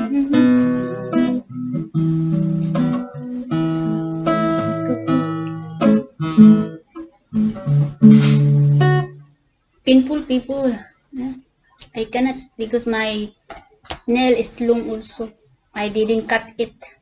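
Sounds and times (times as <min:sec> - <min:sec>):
guitar strummed chords: 0:00.0 - 0:09.2.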